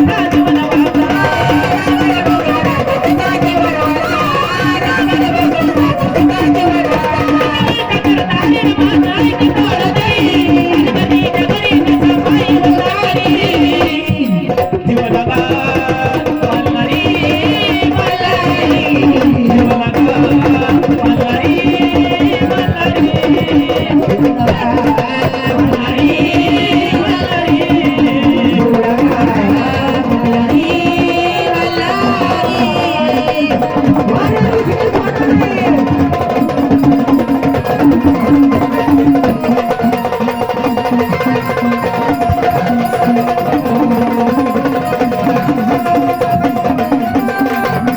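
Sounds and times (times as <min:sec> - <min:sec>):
hand drum rhythm: 0:00.0 - 0:47.9
ornamented melody line: 0:27.8 - 0:47.9.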